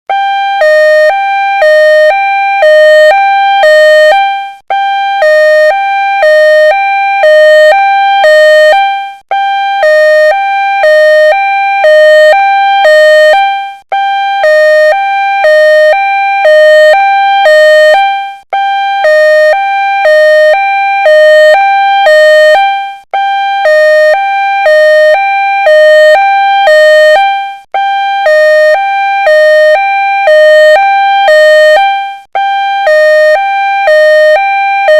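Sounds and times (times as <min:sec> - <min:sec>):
two-tone ambulance siren: 0:00.1 - 0:34.9.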